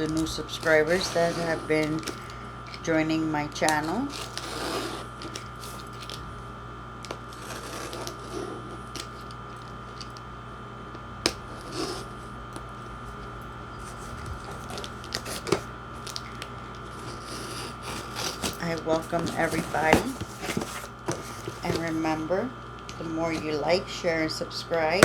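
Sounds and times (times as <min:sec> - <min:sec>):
faint hum: 0:00.0 - 0:25.0
soft rustling of objects: 0:11.4 - 0:23.8.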